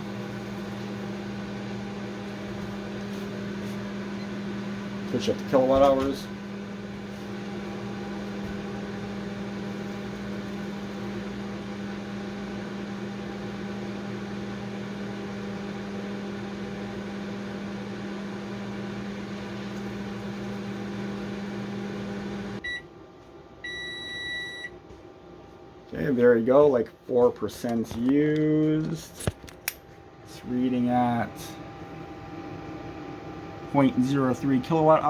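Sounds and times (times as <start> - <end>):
microwave beeping: 0.0 - 23.0, 23.6 - 24.8
microwave oven humming: 0.0 - 26.8, 28.8 - 35.0.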